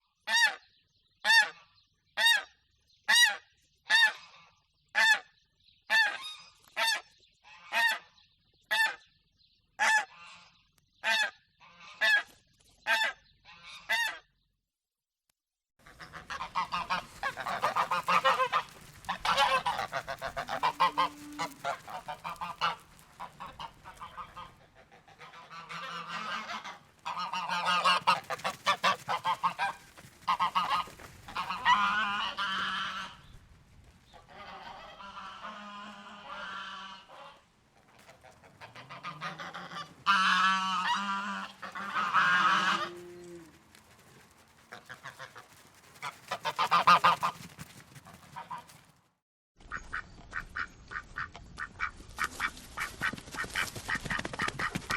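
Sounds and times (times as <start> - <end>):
geese honking: 15.8 - 33.5, 34.1 - 48.8.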